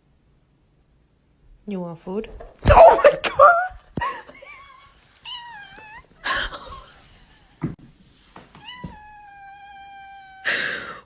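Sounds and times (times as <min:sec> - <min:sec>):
cat meowing: 0:04.6 - 0:06.9, 0:08.6 - 0:11.0.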